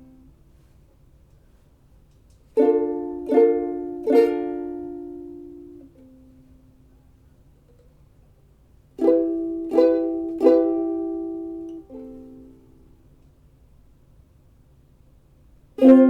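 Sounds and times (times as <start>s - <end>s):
ukulele chord strums: 2.5s - 6.6s, 9.0s - 13.0s, 15.8s - 16.0s.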